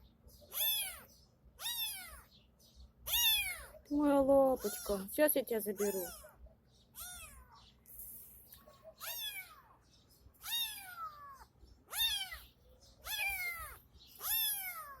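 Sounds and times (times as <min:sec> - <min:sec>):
cat meowing: 0:00.5 - 0:02.3, 0:03.1 - 0:03.8, 0:05.8 - 0:07.6, 0:09.0 - 0:09.8, 0:10.4 - 0:15.0.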